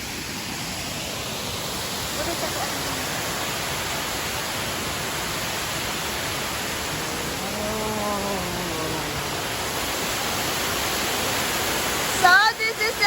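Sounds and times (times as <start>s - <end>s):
waterfall rushing: 0.0s - 13.0s
faint voice calling out: 6.8s - 9.6s.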